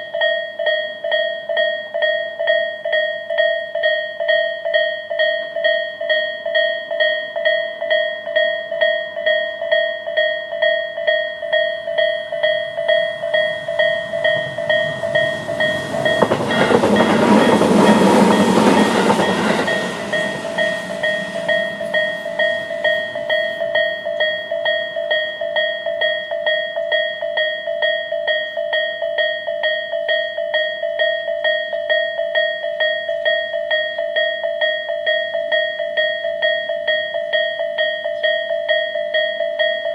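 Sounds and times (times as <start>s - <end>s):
level crossing alarm ringing: 0.0s - 39.9s
train passing: 11.3s - 26.9s.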